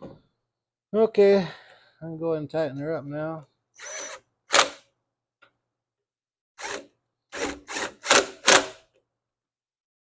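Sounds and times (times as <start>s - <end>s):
tool clicking and whirring: 3.8s - 4.8s, 6.6s - 8.9s.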